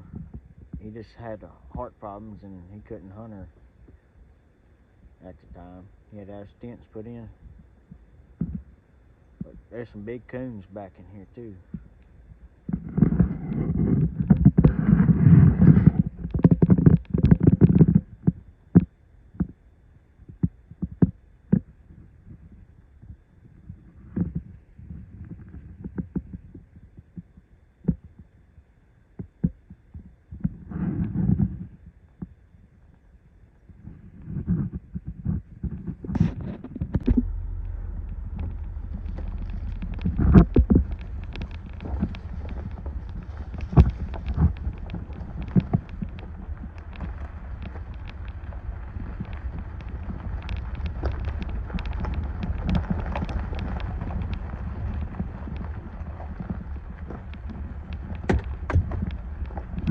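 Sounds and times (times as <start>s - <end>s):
bumps and rattles: 11.6s - 18.8s, 34.2s - 59.9s
vehicle rumbling on rough road: 33.9s - 59.9s
heavy vehicle jolt: 37.0s - 59.9s.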